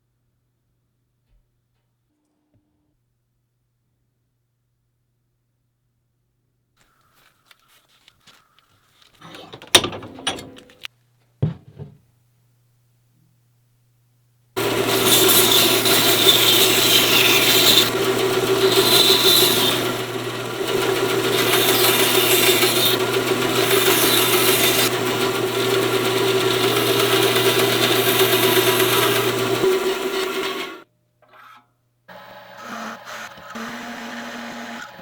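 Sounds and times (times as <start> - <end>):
belt grinder motor running: 14.6 - 30.8, 32.1 - 35.0
steel grinding on belt: 14.6 - 30.8.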